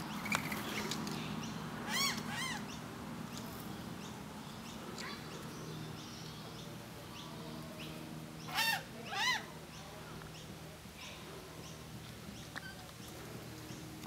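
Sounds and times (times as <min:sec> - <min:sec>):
low steady hum: 0:00.0 - 0:14.0
bird calling loudly: 0:01.8 - 0:02.8.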